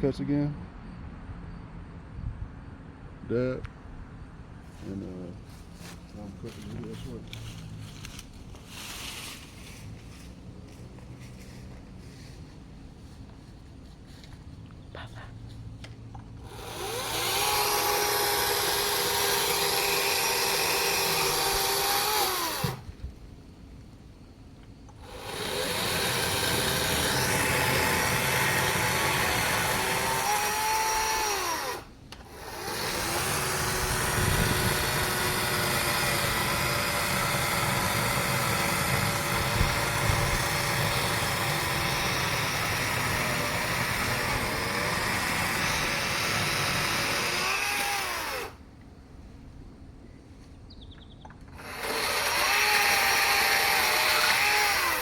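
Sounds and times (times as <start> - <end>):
chainsaw cutting logs: 16.4 - 22.9, 24.9 - 48.6, 51.5 - 55.0.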